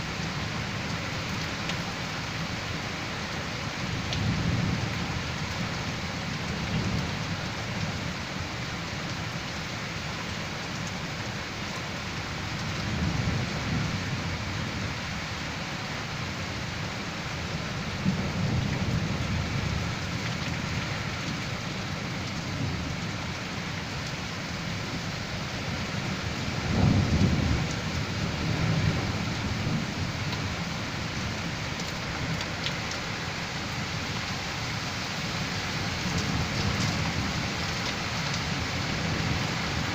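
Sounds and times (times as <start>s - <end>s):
heavy rain pouring: 0.0s - 39.9s
thunder rumbling: 25.8s - 31.6s.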